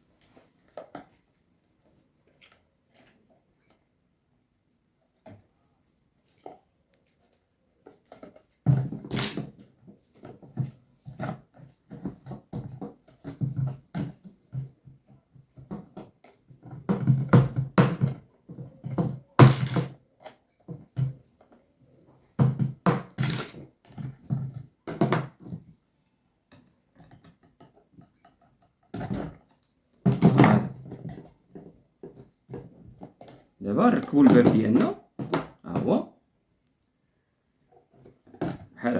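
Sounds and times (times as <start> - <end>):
parts knocking and clicking by hand: 10.2 - 21.6.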